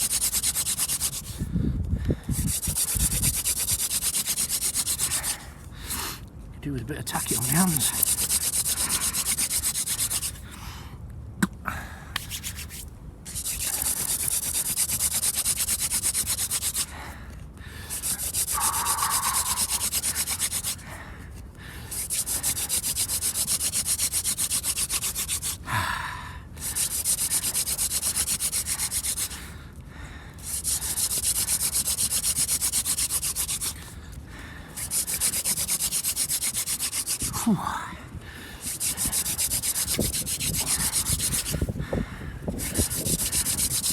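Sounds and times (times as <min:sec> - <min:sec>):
wooden spindle rasping in notch: 0:00.0 - 0:01.3, 0:02.3 - 0:05.4, 0:07.2 - 0:10.4, 0:12.2 - 0:16.9, 0:17.9 - 0:20.8, 0:21.9 - 0:25.6, 0:26.6 - 0:29.4, 0:30.4 - 0:34.0, 0:34.8 - 0:37.4, 0:38.6 - 0:41.7, 0:42.5 - 0:43.9.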